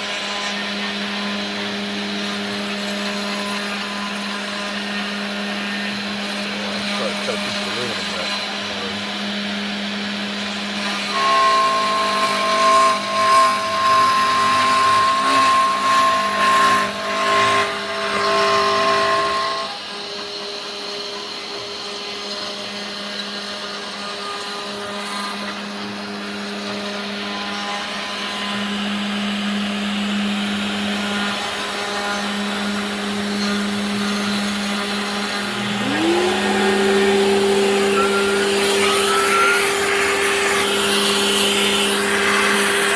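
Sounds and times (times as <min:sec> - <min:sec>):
bit cutting wood whine: 0:00.0 - 0:42.9
router spindle humming: 0:00.0 - 0:42.9
tone rising in pitch: 0:35.5 - 0:39.8.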